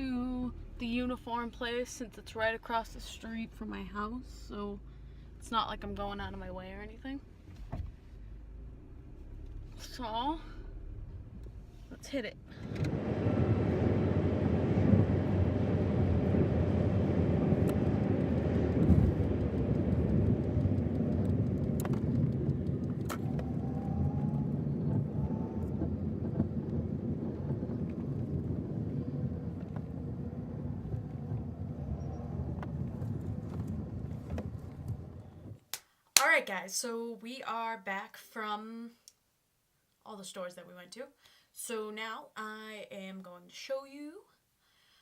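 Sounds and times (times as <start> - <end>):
car engine and road noise: 0.0 - 35.7.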